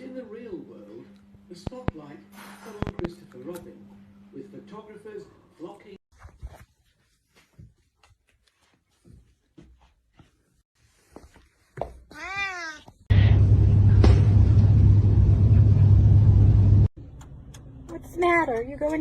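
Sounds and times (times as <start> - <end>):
loud steady humming noise: 13.1 - 16.9.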